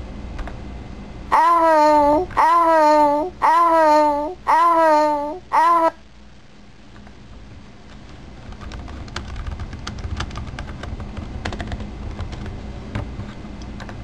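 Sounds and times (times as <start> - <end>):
low steady hum: 0.0 - 14.0
keyboard typing: 8.4 - 12.5.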